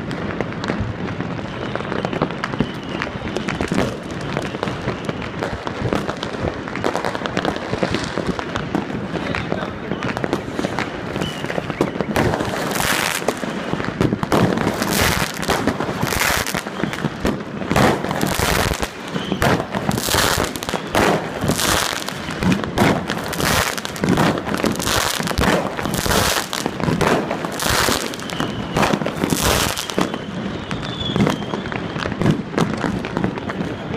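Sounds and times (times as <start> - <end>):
firecrackers crackling: 0.0 - 33.9
fireworks bangs: 0.0 - 33.9.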